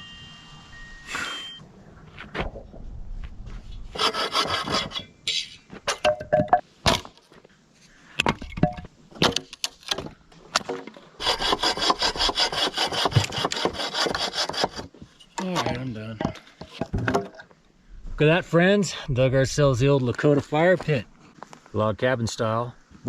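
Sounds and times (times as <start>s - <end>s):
hand saw cutting wood: 3.9s - 5.0s, 11.2s - 15.0s.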